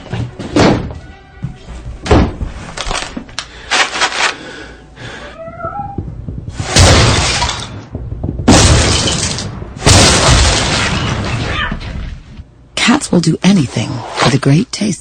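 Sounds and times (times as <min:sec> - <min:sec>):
loud crashes with rattling clatter: 0:06.5 - 0:12.1.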